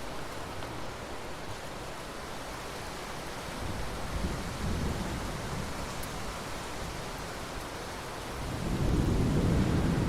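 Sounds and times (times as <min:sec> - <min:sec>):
steady rain: 0:00.0 - 0:10.0
low rumble of thunder: 0:08.4 - 0:10.0.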